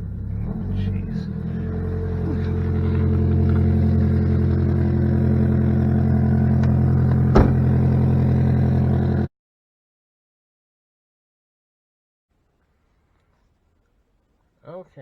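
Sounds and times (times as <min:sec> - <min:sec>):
car engine running loud: 0:00.0 - 0:09.3
exhaust leak blowing: 0:01.7 - 0:08.4
sharp knock: 0:07.3 - 0:07.7.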